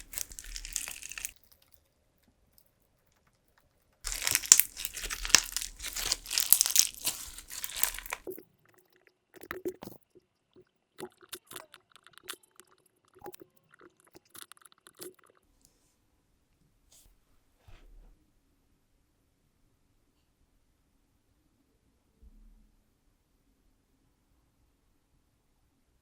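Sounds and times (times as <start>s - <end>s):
crunchy slime crackling: 0.0s - 1.5s, 4.1s - 8.4s.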